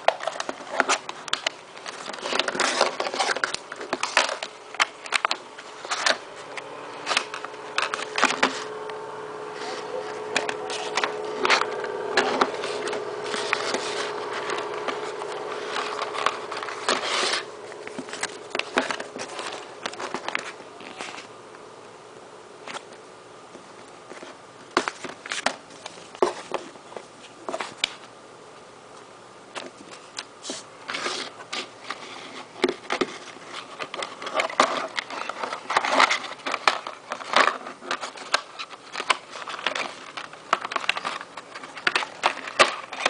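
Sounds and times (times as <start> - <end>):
packaging clicking and crinkling: 0.0 - 21.3, 30.9 - 43.0
faint steady hum: 0.0 - 43.0.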